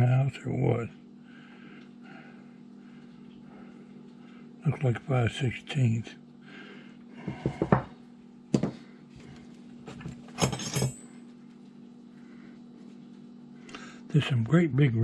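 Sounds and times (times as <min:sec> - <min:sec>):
steel wrenches clinking together: 0:10.4 - 0:11.0.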